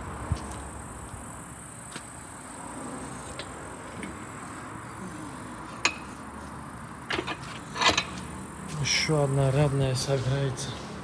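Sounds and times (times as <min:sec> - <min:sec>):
workshop background noise: 0:03.2 - 0:11.0.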